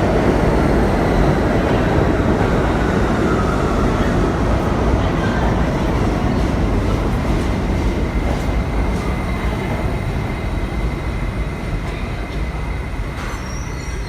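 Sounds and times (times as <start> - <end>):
subway train rumble and whine: 0.0 - 14.0.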